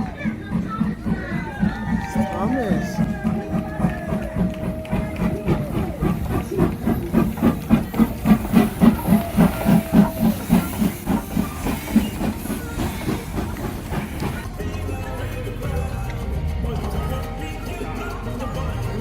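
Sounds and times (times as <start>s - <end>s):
steam hiss: 0.0s - 14.6s
steam locomotive chuffing: 0.0s - 15.9s.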